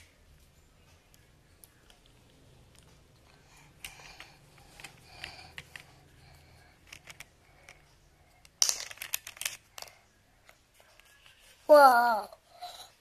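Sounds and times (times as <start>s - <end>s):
plastic toy parts clicking: 3.8s - 6.0s, 6.8s - 7.8s, 8.4s - 10.0s.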